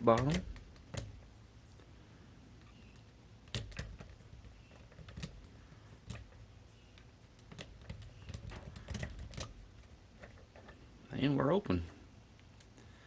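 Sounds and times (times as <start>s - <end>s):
lock pick clicking and scraping: 0.1s - 1.2s, 2.6s - 10.8s.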